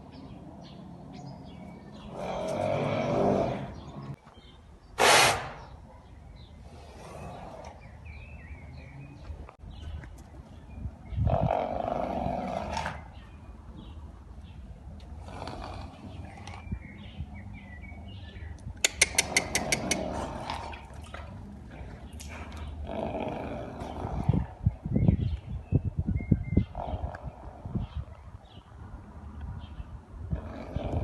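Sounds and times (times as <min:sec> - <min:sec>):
horse snorting: 0:02.0 - 0:04.0, 0:05.0 - 0:05.8, 0:18.9 - 0:24.5, 0:30.3 - 0:31.0.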